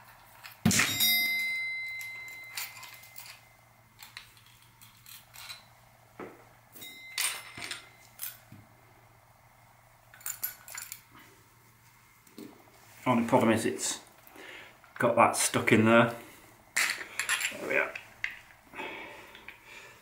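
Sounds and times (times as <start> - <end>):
ringing metallic clink: 0.7 - 3.6, 6.8 - 8.4.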